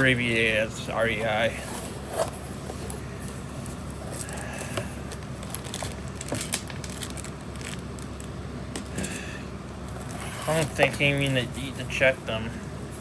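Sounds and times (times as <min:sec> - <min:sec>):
packaging clicks and crinkles: 0:04.1 - 0:08.9.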